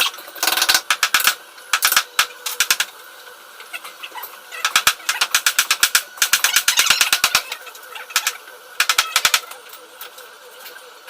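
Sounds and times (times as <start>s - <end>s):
rapid sharp cracks: 0.4s - 2.9s, 4.6s - 7.5s.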